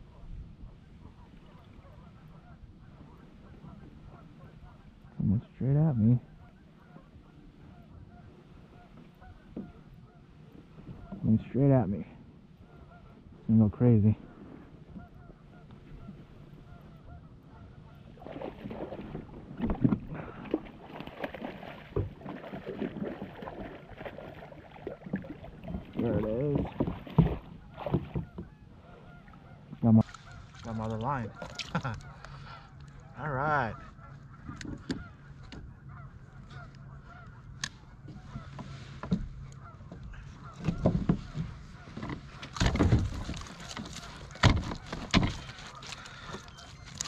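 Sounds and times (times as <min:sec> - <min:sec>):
geese honking: 0:00.9 - 0:11.8, 0:12.4 - 0:18.9, 0:20.2 - 0:47.0
water splashing against boat: 0:17.9 - 0:32.2, 0:38.0 - 0:47.0
fish thrashing at water surface: 0:18.2 - 0:28.2.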